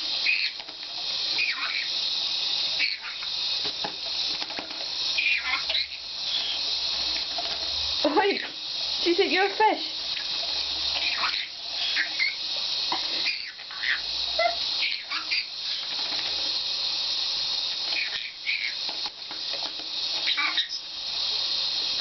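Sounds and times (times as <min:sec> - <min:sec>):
tap water running into sink: 0:00.1 - 0:14.8, 0:15.6 - 0:22.0
parrot squeaky chirps: 0:00.2 - 0:00.6, 0:01.4 - 0:01.9, 0:02.8 - 0:03.2, 0:05.2 - 0:06.6, 0:11.0 - 0:12.4, 0:13.2 - 0:15.8, 0:20.2 - 0:20.8.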